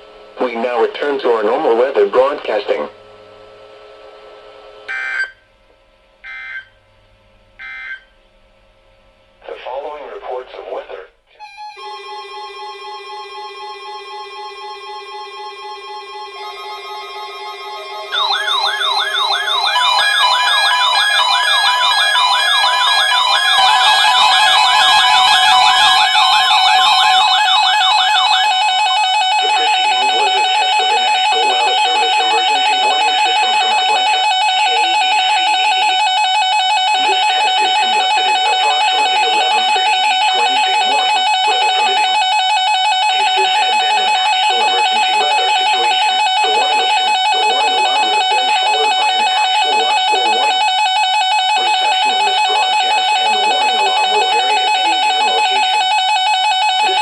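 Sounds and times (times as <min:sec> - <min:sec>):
held high tone: 0:11.4 - 0:35.0
warbling siren-like sweep: 0:13.6 - 0:57.0.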